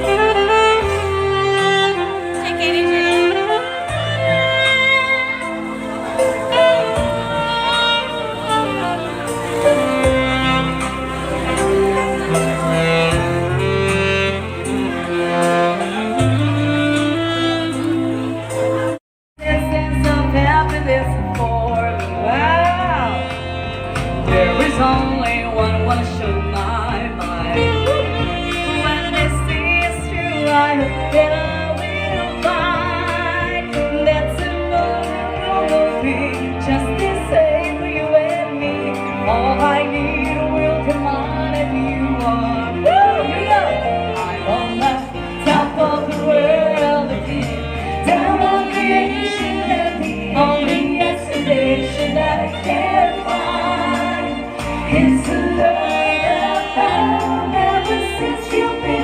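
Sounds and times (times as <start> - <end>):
pop song with singing: 19.4 - 59.0.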